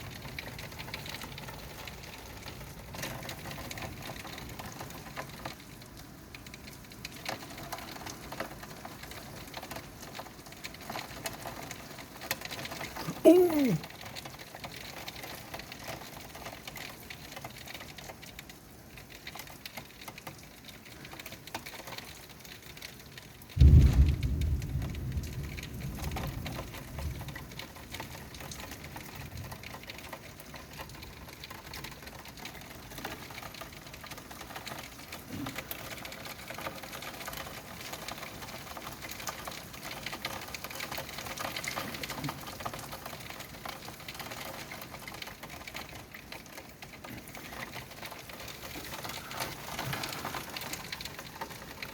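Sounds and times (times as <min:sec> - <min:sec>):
steady rain: 0:00.0 - 0:51.9
thunder clap and rumble: 0:23.6 - 0:27.6.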